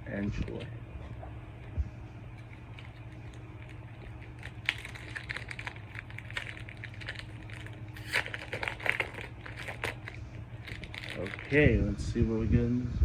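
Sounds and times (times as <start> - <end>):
foil wrapper crinkling: 2.3 - 11.8.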